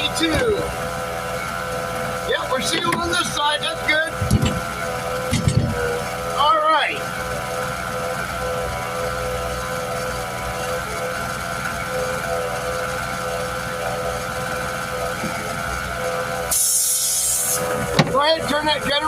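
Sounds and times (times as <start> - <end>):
generator engine running: 0.0 - 19.0
air hissing burst: 16.5 - 17.8.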